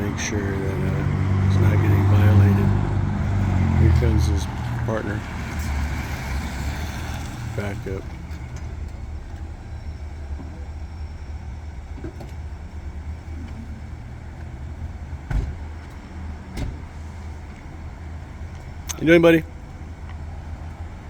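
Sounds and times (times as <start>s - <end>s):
engine idling: 0.0s - 5.6s, 6.9s - 21.0s.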